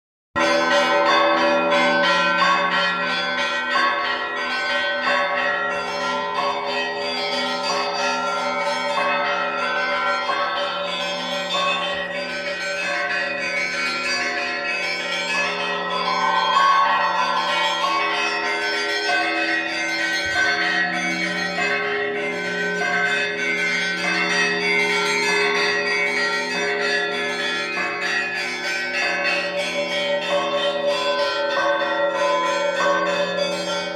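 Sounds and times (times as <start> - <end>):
church bells pealing: 0.4 - 33.9
large bell deep tone: 15.4 - 27.3.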